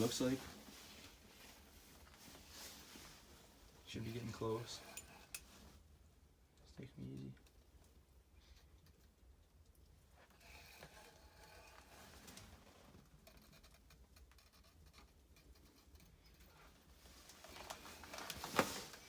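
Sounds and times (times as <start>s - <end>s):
light rustling: 16.5s - 19.0s.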